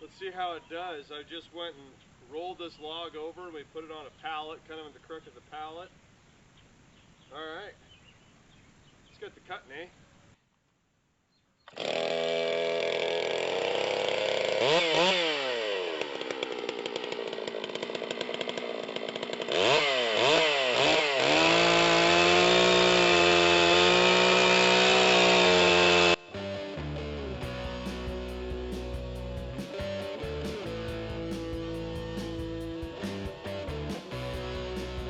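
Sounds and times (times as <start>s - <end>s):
chainsaw revving: 11.7s - 35.0s.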